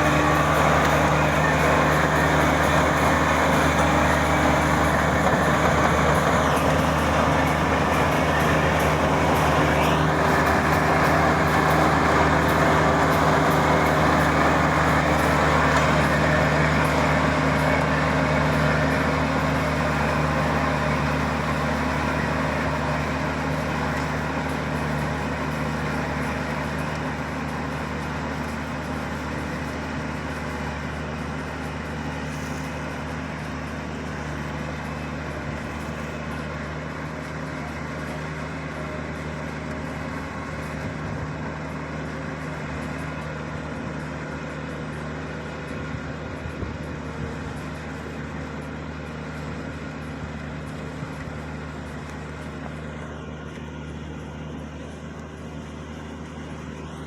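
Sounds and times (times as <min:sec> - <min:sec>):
threshing machinery clatter: 0:00.0 - 0:36.7
combine harvester engine hum: 0:00.0 - 0:57.0.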